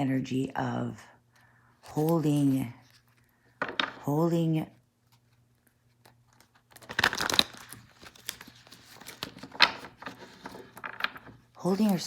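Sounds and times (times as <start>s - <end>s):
cards rustling: 1.8s - 4.0s, 5.1s - 12.0s.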